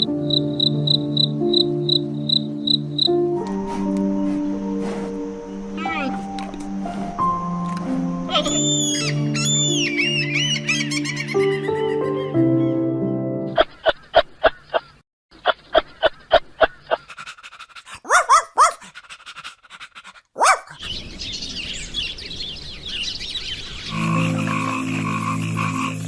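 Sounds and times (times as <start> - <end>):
music: 0.0 - 13.6, 23.9 - 26.0
high chirping: 8.2 - 11.9
dog yelping: 17.8 - 19.0, 20.0 - 20.8
dog barking: 17.9 - 19.0, 20.4 - 20.8.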